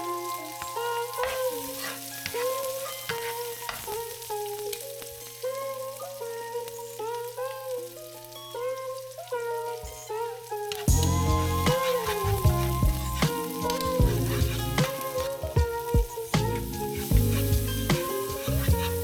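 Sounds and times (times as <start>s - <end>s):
food sizzling in a pan: 0.0s - 19.0s
soft melodic background music: 0.0s - 19.0s.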